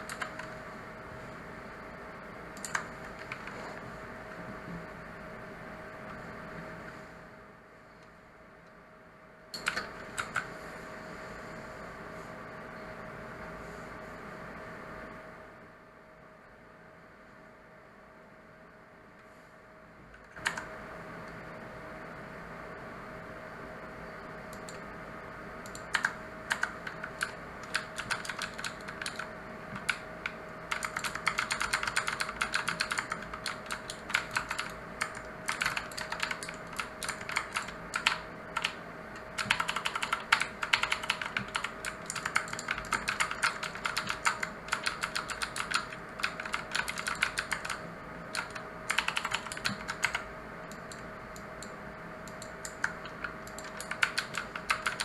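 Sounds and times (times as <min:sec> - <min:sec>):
clicky mechanical keyboard typing: 0:00.0 - 0:00.5, 0:02.6 - 0:03.8, 0:09.6 - 0:10.5, 0:20.2 - 0:20.7, 0:24.5 - 0:24.8, 0:25.6 - 0:55.0
faint steady hum: 0:00.0 - 0:55.0.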